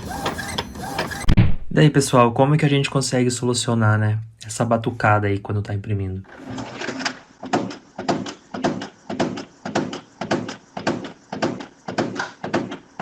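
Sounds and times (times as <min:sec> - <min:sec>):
inkjet printer printing: 0:00.0 - 0:01.4, 0:06.3 - 0:13.0
print carriage clattering knock: 0:06.4 - 0:13.0.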